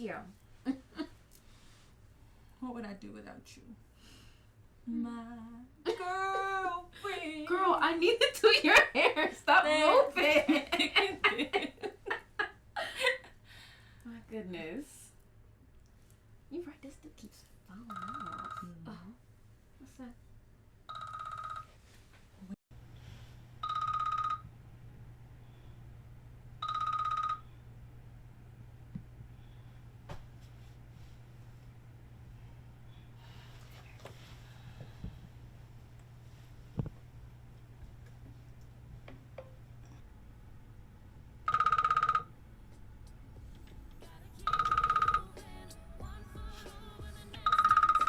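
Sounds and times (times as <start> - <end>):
low room hum: 0.0 - 48.0
telephone ringing: 17.9 - 18.7, 20.9 - 21.9, 23.6 - 24.5, 26.6 - 27.6, 41.4 - 42.4, 44.4 - 45.4, 47.4 - 48.0.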